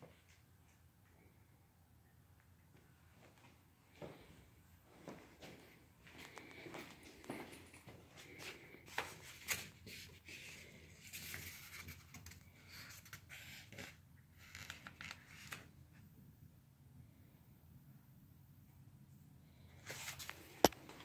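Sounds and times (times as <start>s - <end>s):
faint scraping and rustling: 19.5s - 21.0s.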